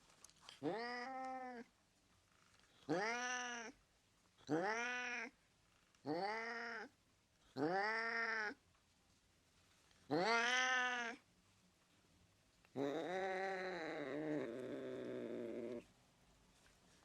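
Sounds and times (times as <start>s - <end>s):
cat meowing: 0.6s - 1.7s, 2.9s - 3.8s, 4.5s - 5.3s, 6.1s - 6.9s, 7.6s - 8.6s, 10.1s - 11.2s, 12.8s - 15.8s.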